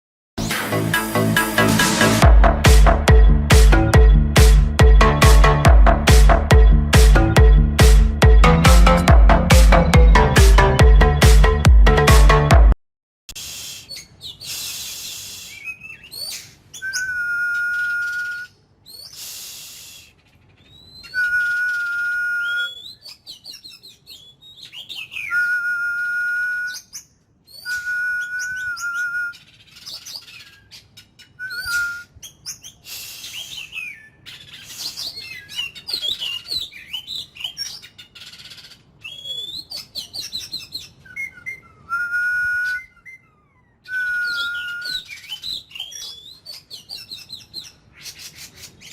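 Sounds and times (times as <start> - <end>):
bird singing chirps and whistles: 13.6 - 48.9.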